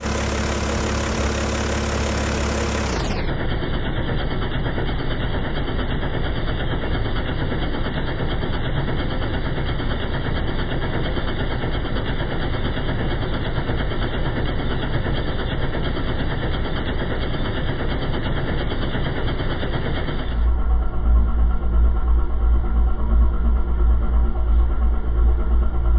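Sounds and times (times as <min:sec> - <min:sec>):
diesel engine idling: 0:00.0 - 0:07.6.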